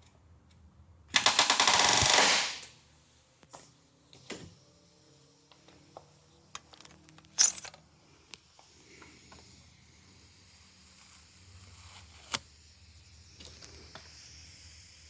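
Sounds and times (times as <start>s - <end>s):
loud sharp burst: 1.3s - 2.6s.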